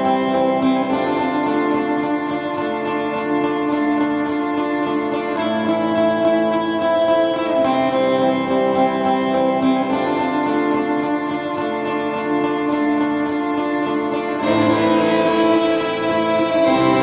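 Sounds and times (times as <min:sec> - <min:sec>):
guitar background music: 0:14.4 - 0:17.0.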